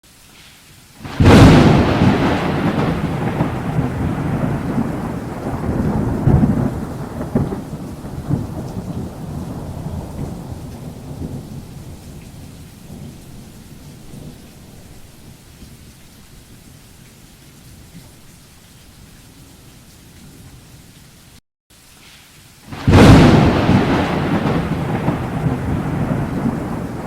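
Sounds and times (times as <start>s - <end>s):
thunder crack and rumble: 1.0s - 14.9s, 22.7s - 27.0s.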